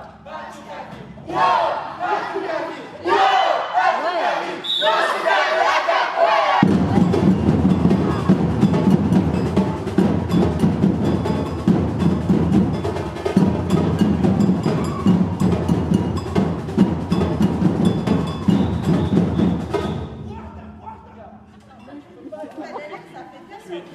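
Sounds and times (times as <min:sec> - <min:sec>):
percussion group drumming: 0:06.6 - 0:21.4.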